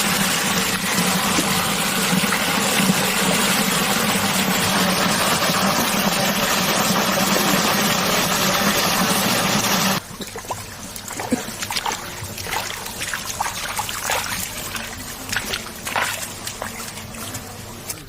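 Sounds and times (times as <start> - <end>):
loud steady machine noise: 0.0 - 10.0
water trickling and splashing: 0.0 - 18.0.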